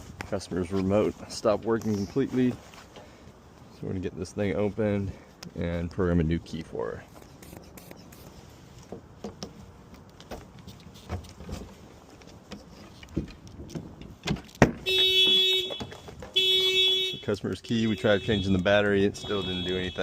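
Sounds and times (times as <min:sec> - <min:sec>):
car alarm tone: 0:14.8 - 0:20.0.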